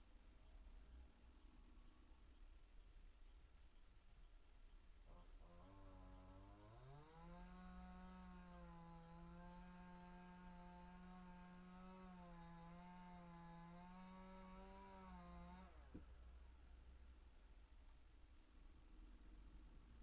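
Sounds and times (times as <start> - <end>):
faint chainsaw engine revving: 5.0 - 16.6.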